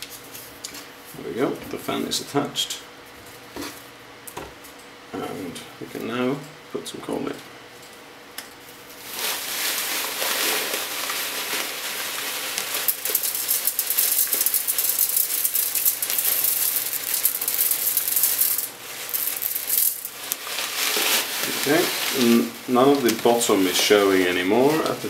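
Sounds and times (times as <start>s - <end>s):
granules poured rattling: 9.0s - 25.0s.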